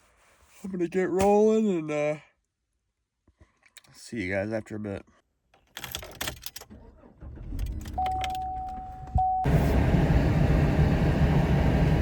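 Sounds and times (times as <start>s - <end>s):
truck engine starting and running: 6.5s - 12.0s
truck driving road noise: 9.5s - 12.0s.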